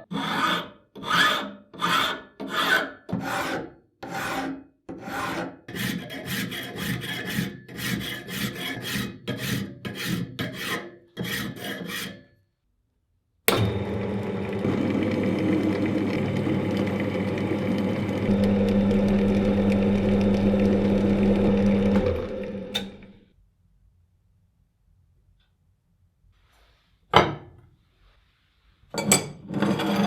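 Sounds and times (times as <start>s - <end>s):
hand file strokes: 0.0s - 12.2s
electric power tool running: 13.5s - 23.2s.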